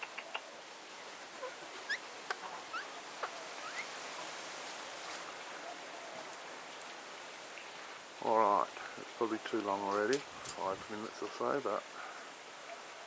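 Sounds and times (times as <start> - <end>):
parrot clicks: 0.0 - 0.5
steady background hiss: 0.0 - 13.0
parrot upward-sliding chirps: 3.6 - 4.0.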